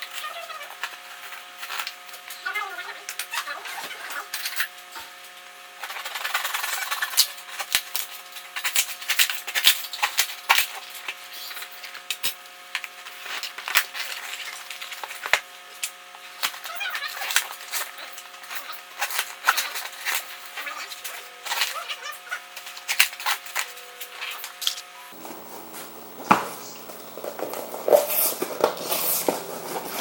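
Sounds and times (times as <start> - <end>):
steady low hum: 22.5 - 30.0.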